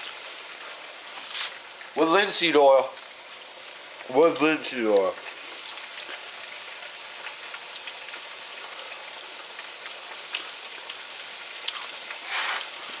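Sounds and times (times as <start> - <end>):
fish deep-frying in oil: 0.0 - 13.0.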